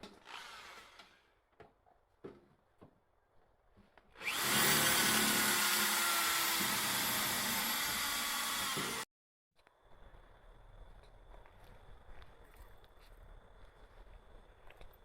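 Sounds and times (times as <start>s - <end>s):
electric power tool whirring: 4.2s - 9.1s.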